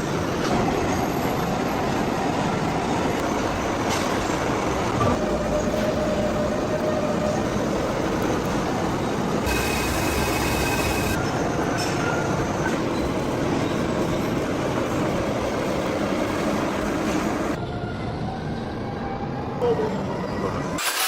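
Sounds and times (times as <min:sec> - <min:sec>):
heavy machinery rumbling and grinding: 0:09.4 - 0:11.2
thin high whine: 0:09.4 - 0:11.2.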